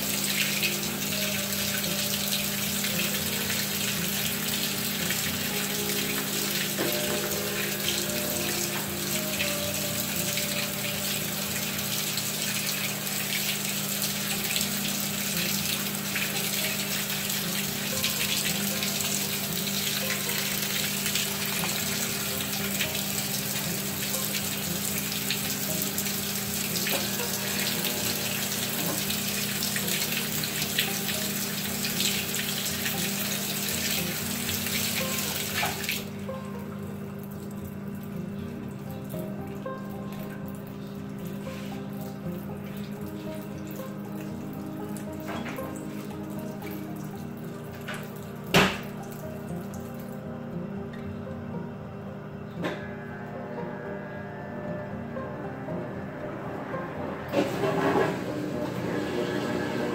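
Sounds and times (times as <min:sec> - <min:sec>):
washing machine hum: 0:00.0 - 0:59.9
water running in washing machine: 0:00.0 - 0:59.9.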